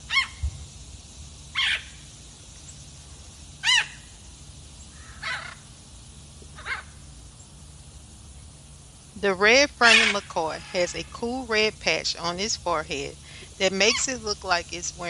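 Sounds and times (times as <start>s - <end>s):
macaw squawking: 1.6s - 2.0s, 3.6s - 4.0s, 5.0s - 5.6s, 6.6s - 6.9s, 9.8s - 11.2s.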